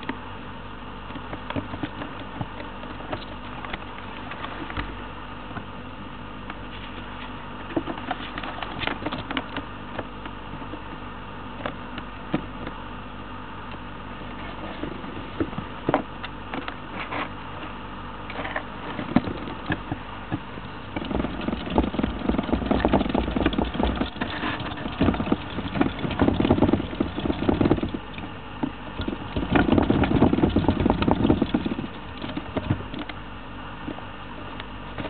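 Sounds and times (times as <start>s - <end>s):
hamster rustling and scratching: 1.1s - 5.0s, 6.7s - 9.7s, 18.3s - 33.2s.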